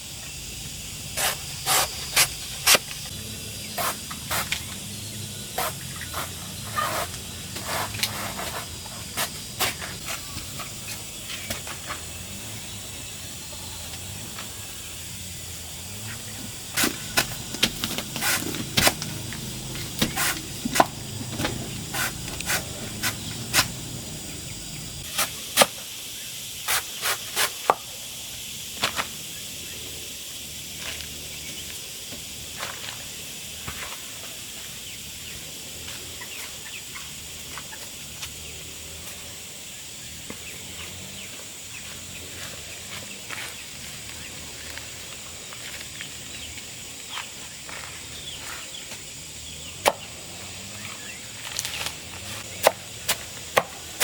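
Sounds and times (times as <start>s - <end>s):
steady hiss: 0.0s - 54.0s.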